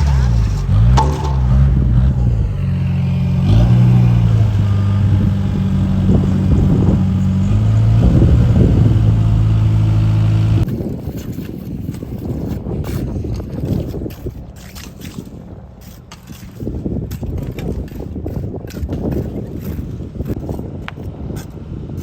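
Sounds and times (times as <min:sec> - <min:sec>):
heavy engine humming: 0:00.0 - 0:10.7
wind noise on microphone: 0:00.0 - 0:22.0.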